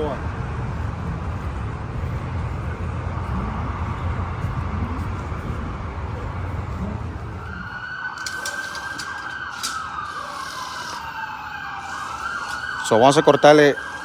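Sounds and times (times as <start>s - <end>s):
siren wailing: 7.0s - 14.0s
sharp clicks: 8.2s - 11.2s.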